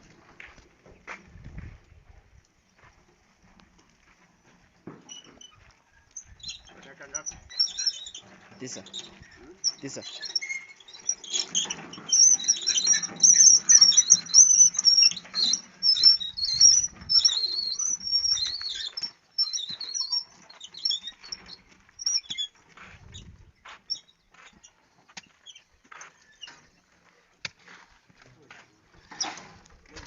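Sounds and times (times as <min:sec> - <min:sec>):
small birds chirping: 0:06.0 - 0:26.9.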